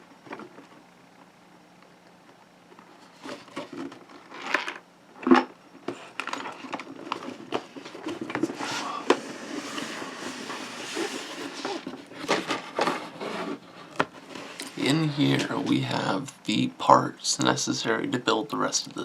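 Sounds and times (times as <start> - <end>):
packing material rustling: 6.0 - 14.8.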